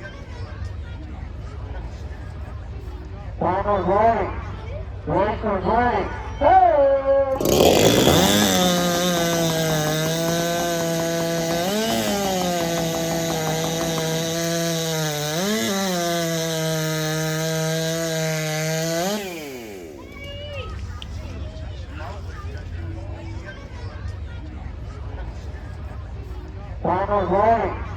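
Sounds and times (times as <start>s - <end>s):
chainsaw cutting log: 7.3s - 20.2s.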